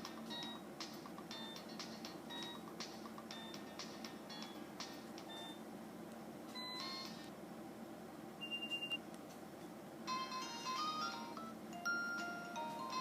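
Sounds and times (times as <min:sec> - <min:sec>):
short electronic tones: 0:08.4 - 0:09.0
high-pitched phone ringtone: 0:10.1 - 0:13.0.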